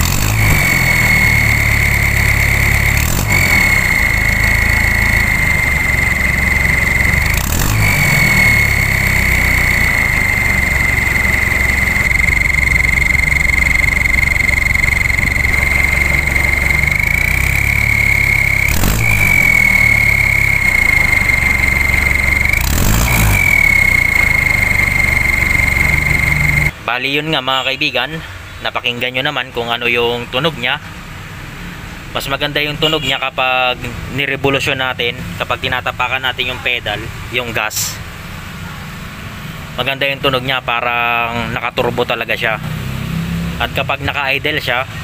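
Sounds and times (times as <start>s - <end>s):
short rushing bursts: 0.0s - 26.8s
high-pitched exhaust whistle: 0.0s - 29.2s, 32.2s - 34.3s
diesel engine rumble: 0.0s - 45.0s.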